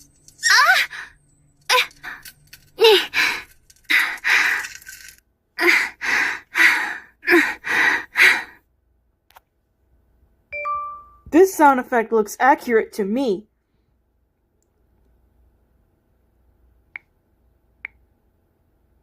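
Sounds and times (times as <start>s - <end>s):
woman moaning and gasping: 0.4s - 8.6s.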